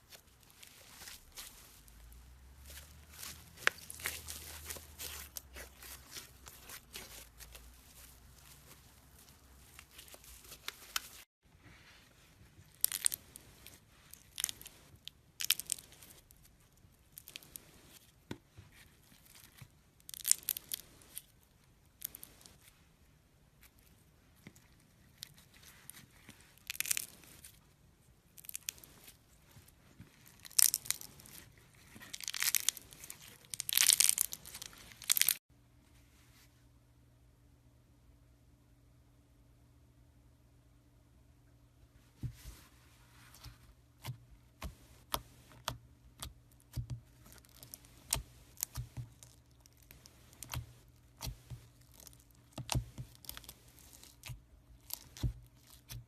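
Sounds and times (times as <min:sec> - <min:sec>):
slime squished and stretched: 0:00.0 - 0:11.2, 0:12.6 - 0:18.0, 0:18.8 - 0:22.7, 0:23.6 - 0:27.6, 0:28.3 - 0:35.4, 0:43.3 - 0:56.0.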